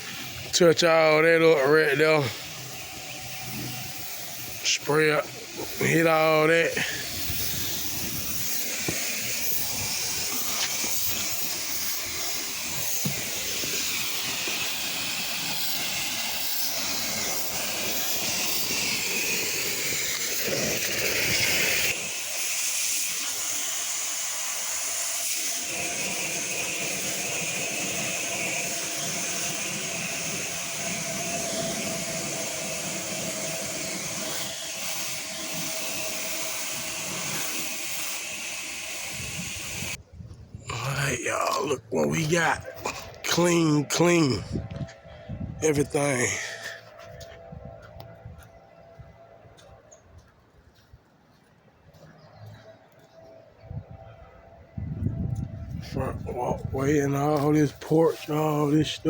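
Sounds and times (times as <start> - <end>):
pressure washer spraying water: 0.0 - 40.0, 56.9 - 59.0.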